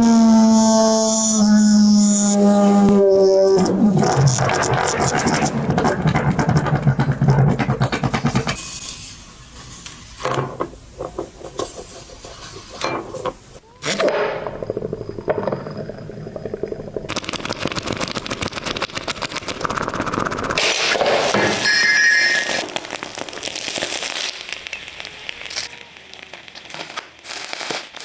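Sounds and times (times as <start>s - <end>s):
hot metal crackling and sizzling: 0.0s - 13.6s, 16.4s - 28.0s.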